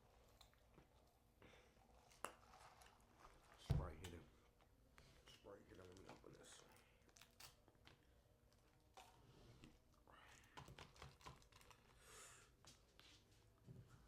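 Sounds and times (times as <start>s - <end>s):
food packaging rustling: 1.9s - 9.3s, 10.6s - 12.0s.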